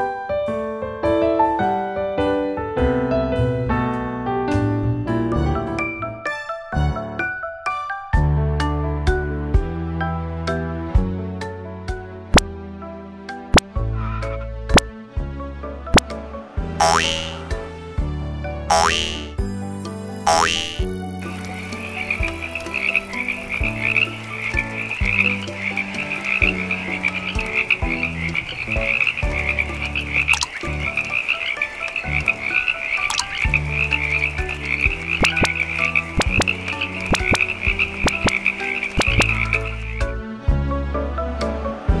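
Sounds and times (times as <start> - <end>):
background music with low notes: 0.0 - 42.0
frogs croaking in a trill: 16.8 - 17.4, 18.7 - 19.4, 20.3 - 40.2.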